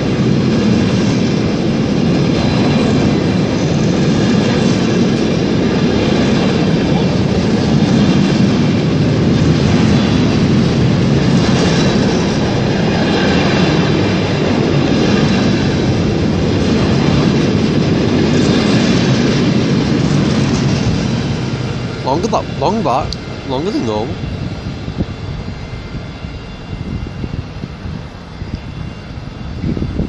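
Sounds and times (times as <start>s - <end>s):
freight train wheels clattering: 0.0s - 22.0s.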